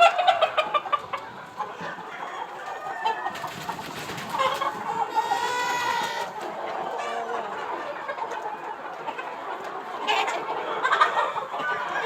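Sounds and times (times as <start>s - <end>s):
chicken drawn-out call: 0.0s - 12.0s
chickens clucking: 0.0s - 12.0s.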